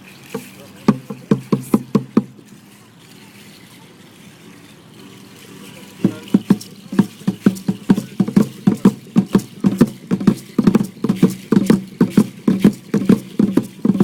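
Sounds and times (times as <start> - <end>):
drum beating dance rhythm: 0.8 - 2.3, 6.0 - 14.0.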